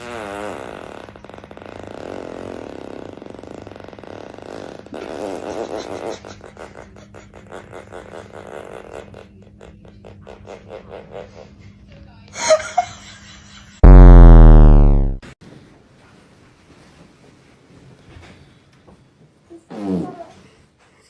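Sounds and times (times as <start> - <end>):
long fart: 0.0 - 11.6, 13.8 - 15.4, 19.7 - 20.4.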